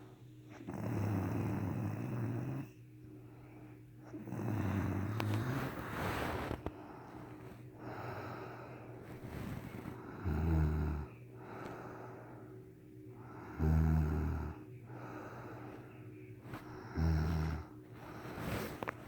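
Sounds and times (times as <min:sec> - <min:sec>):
woman snoring heavily: 0:00.7 - 0:02.7, 0:04.1 - 0:06.7, 0:09.4 - 0:11.6, 0:13.3 - 0:15.6, 0:16.6 - 0:18.8
hissing breaths: 0:05.1 - 0:13.9, 0:14.5 - 0:19.0.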